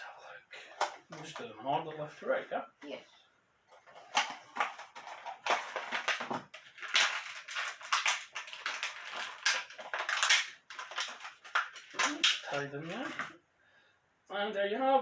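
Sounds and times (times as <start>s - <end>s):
packaging crinkling and rustling: 3.7s - 13.4s.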